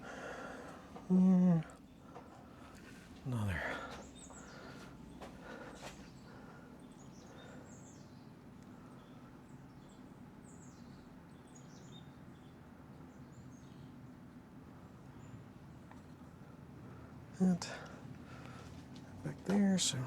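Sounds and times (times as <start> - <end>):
low steady hum: 0.0 - 11.0
faint birds chirping: 0.0 - 20.0.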